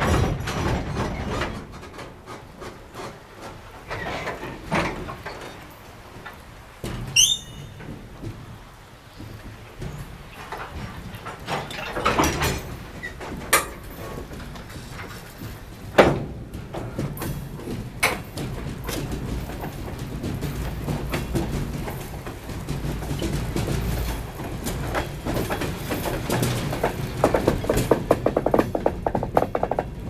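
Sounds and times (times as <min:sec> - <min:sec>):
freight train rumble: 0:00.0 - 0:30.0
wheels knocking over rail joints: 0:00.0 - 0:30.0
wheels and couplings squeaking: 0:02.4 - 0:15.9.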